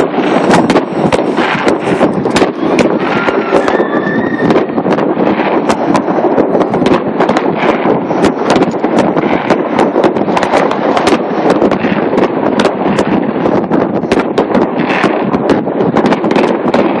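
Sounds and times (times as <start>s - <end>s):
fireworks bangs and crackle: 0.0s - 17.0s.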